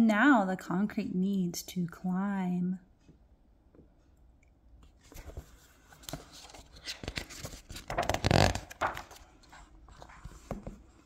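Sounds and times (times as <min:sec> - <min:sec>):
paper pages rustling: 0:04.9 - 0:11.0.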